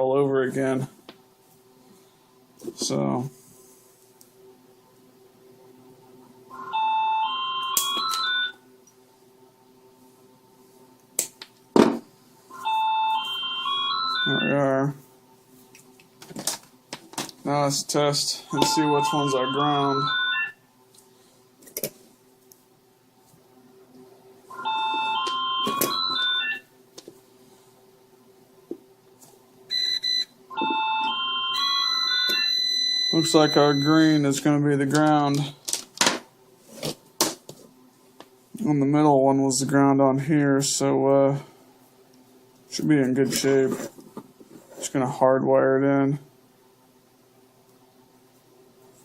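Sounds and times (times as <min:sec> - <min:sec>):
electronic beeping tones: 0:18.5 - 0:20.6.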